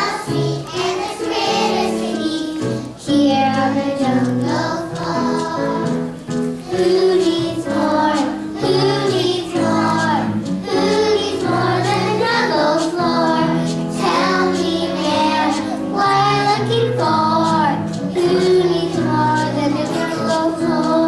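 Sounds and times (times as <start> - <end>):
backing music: 0.0 - 21.0
person singing: 6.7 - 21.0.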